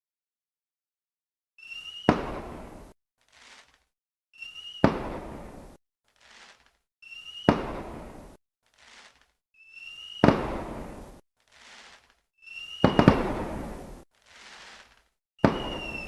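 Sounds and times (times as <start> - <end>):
firework whistle and bang: 1.6 - 3.0, 4.4 - 5.7, 7.0 - 8.2, 9.6 - 11.2, 12.4 - 14.0, 15.4 - 16.0
firework hissing tail: 4.4 - 16.0.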